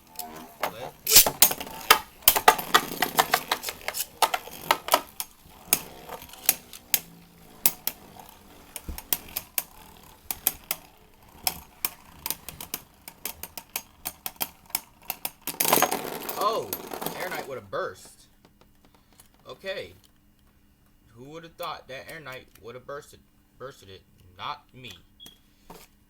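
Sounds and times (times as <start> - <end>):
spinning tops clacking: 0.0 - 18.2.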